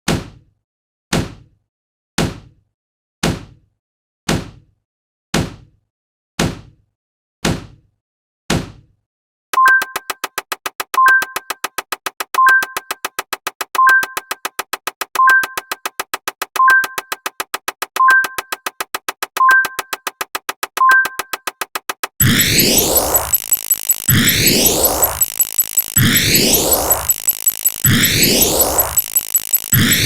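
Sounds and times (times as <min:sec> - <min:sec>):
two-note electronic beep: 0:09.6 - 0:10.2, 0:11.0 - 0:11.6, 0:22.2 - 0:30.0
fast run of clicks: 0:09.6 - 0:30.0
decaying synthetic thumps: 0:09.9 - 0:30.0.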